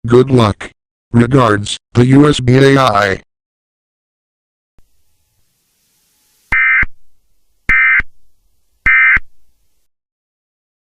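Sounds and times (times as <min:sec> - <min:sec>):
buzzy digital data tones: 0:04.8 - 0:09.9.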